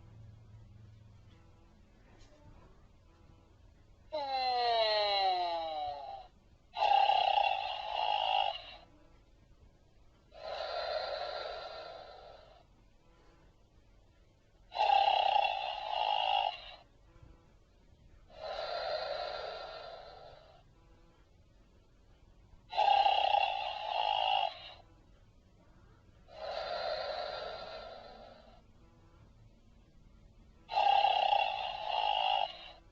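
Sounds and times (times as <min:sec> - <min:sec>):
toy voice box snoring: 0:04.1 - 0:08.9, 0:10.3 - 0:12.7, 0:14.7 - 0:16.9, 0:18.3 - 0:20.6, 0:22.6 - 0:24.8, 0:26.2 - 0:28.7, 0:30.6 - 0:32.9.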